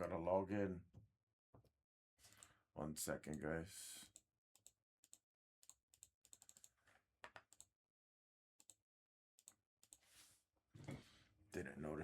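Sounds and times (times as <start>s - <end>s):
faint keyboard typing: 4.6s - 7.7s.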